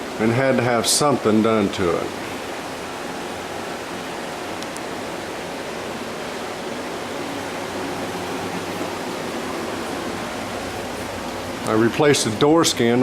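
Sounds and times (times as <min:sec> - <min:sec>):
steady background rushing noise: 0:00.0 - 0:13.0.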